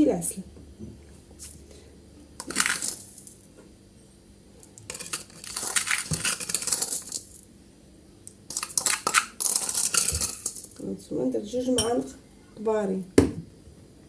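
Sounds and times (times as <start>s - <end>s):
spoon scooping sugar: 2.4s - 3.5s, 4.6s - 7.5s, 8.5s - 10.8s.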